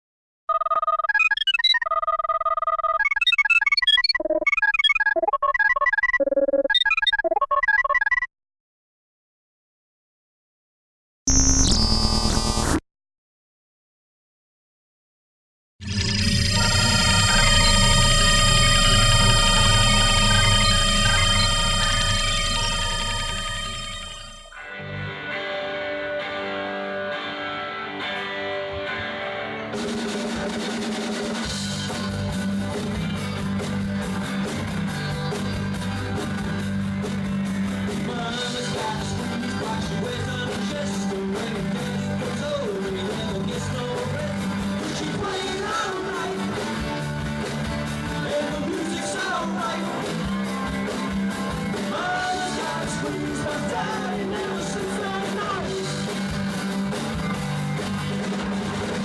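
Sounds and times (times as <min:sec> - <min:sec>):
electric guitar: 0:16.5 - 0:59.0
bass and drum kit: 0:29.8 - 0:59.0
person singing: 0:38.0 - 0:46.7, 0:48.3 - 0:50.1, 0:51.9 - 0:56.1.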